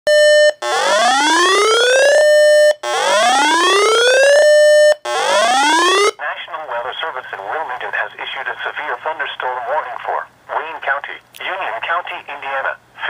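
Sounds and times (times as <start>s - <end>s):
electronic emergency alert tone: 0.1s - 6.2s.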